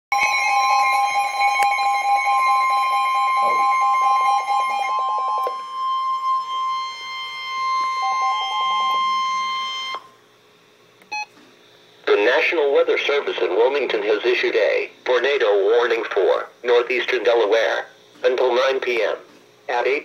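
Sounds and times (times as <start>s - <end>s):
pulsing beep: 0.1s - 10.1s
steady electronic alert tone: 0.1s - 10.1s.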